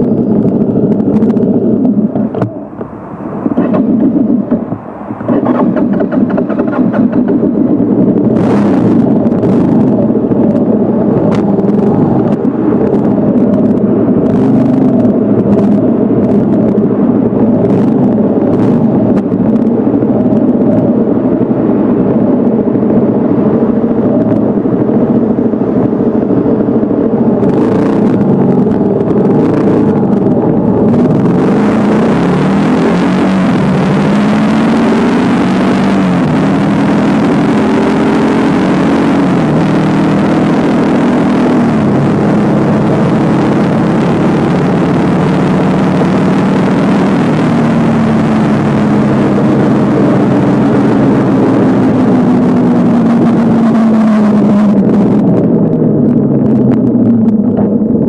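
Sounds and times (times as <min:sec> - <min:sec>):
motorcycle engine cruising: 0:00.0 - 0:58.0
wind noise on microphone: 0:00.0 - 0:58.0.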